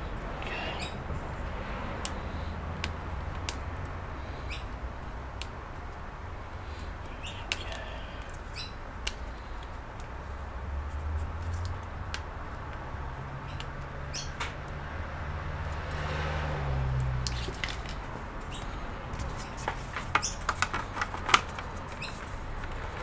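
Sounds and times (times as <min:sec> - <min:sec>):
light clicks of laptop parts: 0:06.6 - 0:12.8, 0:16.9 - 0:23.0.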